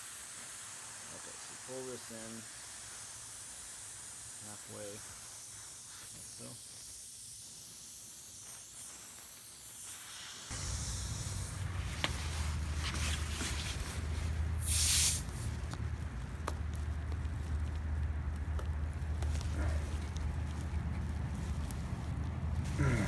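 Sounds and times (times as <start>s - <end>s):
air hissing from tire: 0.0s - 15.8s
low steady hum: 10.5s - 23.0s.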